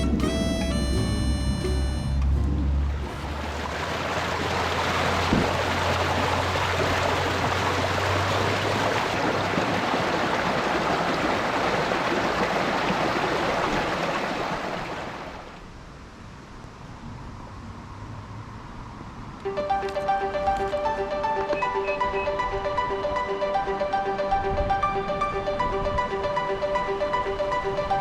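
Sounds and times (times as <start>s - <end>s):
low hum: 0.0s - 4.1s.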